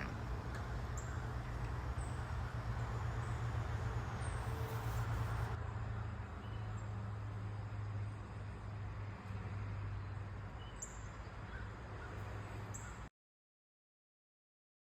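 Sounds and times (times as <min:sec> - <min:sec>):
heavy engine humming: 0:00.0 - 0:06.7.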